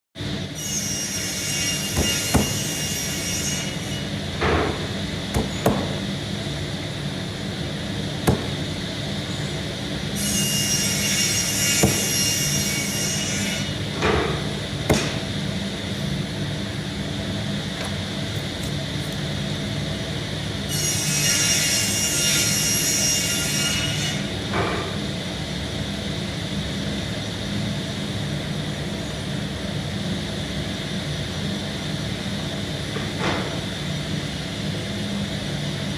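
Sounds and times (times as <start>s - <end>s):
woodworking machine humming: 0.2s - 20.7s
sharp knocks of wood: 8.2s - 8.6s, 14.9s - 15.2s.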